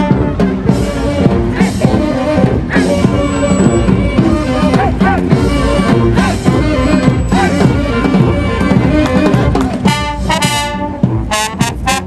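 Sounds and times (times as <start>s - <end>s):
brass band playing: 0.0s - 12.0s
driving drum beat: 0.0s - 12.0s.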